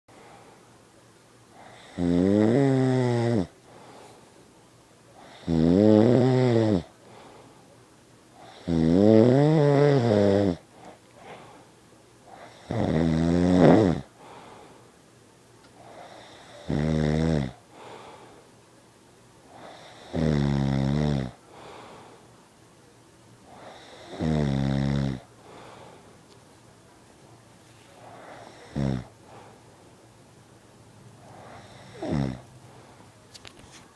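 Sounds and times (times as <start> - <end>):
man snoring loudly: 1.6 - 3.5, 5.2 - 6.9, 8.4 - 10.6, 12.4 - 14.1, 15.9 - 17.6, 19.6 - 21.4, 23.5 - 25.3, 28.1 - 29.1, 31.4 - 32.4.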